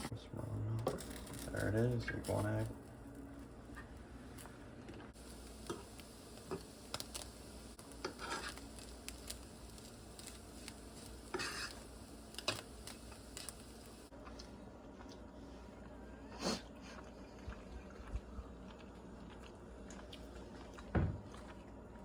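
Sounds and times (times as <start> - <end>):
faint frying sizzle: 0.0 - 14.2
utensil scraping in a pan: 5.6 - 13.6.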